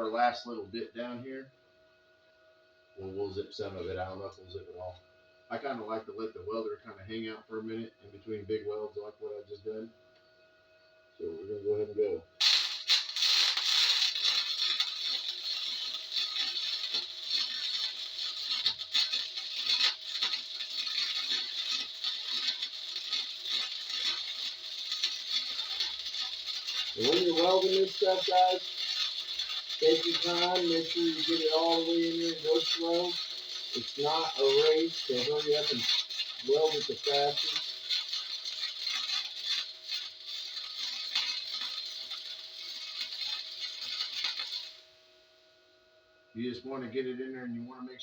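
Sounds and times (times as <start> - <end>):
faint steady hum: 0.0 - 48.0
welding arc crackling: 12.4 - 45.0.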